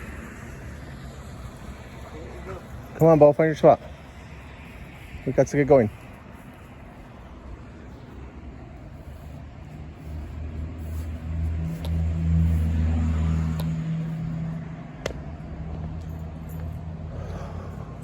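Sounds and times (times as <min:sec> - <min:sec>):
car engine passing by: 0:09.0 - 0:18.0.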